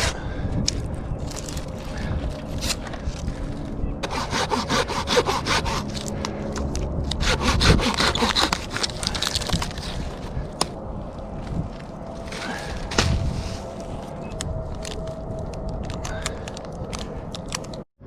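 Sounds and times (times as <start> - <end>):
hand saw cutting wood: 4.0 - 6.1, 7.1 - 10.2.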